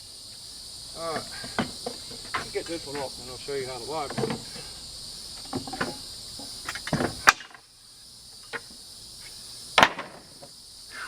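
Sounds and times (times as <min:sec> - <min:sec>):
crickets chirping: 0:00.0 - 0:11.0
pallet wood cracking: 0:09.8 - 0:10.2.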